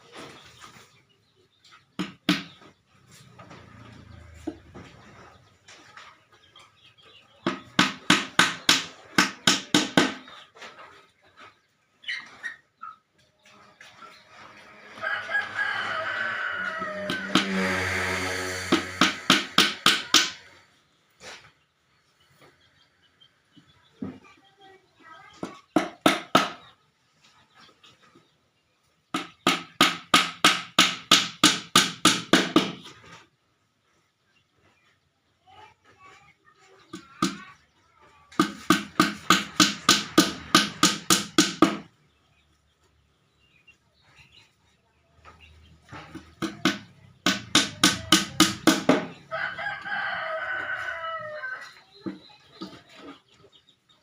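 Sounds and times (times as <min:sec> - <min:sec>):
hammer striking wood: 0:02.0 - 0:02.5, 0:07.5 - 0:10.2, 0:17.0 - 0:17.8, 0:18.5 - 0:20.4, 0:25.8 - 0:26.6, 0:29.2 - 0:32.8, 0:38.4 - 0:41.9, 0:46.0 - 0:49.2
hammer blows on wood: 0:17.0 - 0:20.5.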